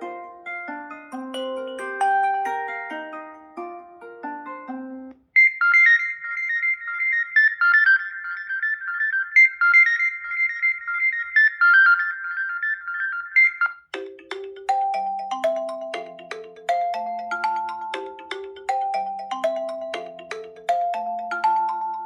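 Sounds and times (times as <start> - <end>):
lower-pitched ringtone melody: 0.0 - 8.2, 14.0 - 22.0
high-pitched electronic ringtone: 0.9 - 8.3, 14.0 - 22.0.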